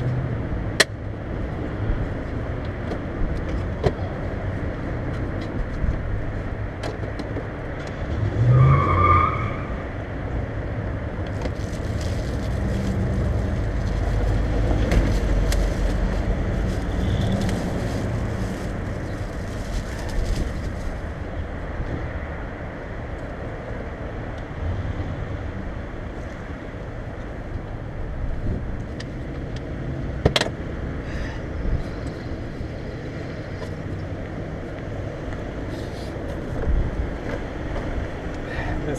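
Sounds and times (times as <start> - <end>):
car engine exhaust rumble: 0.0 - 38.9
wind buffeting microphone: 27.9 - 28.9.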